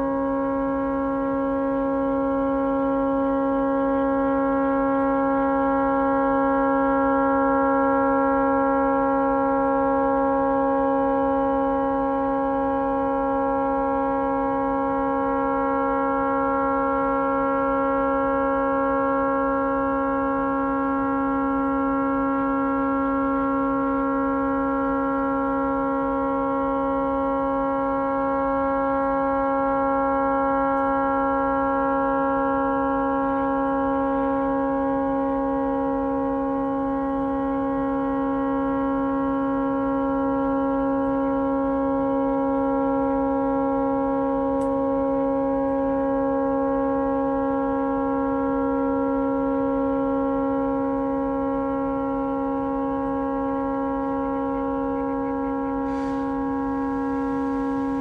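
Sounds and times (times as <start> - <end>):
distant boat horn chord: 0.0 - 58.0.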